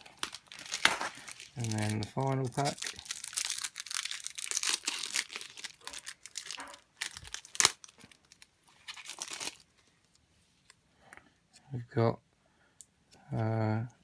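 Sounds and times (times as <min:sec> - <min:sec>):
wrapper snapping: 0:00.0 - 0:09.7
wrapper tearing and crinkling: 0:00.0 - 0:09.7.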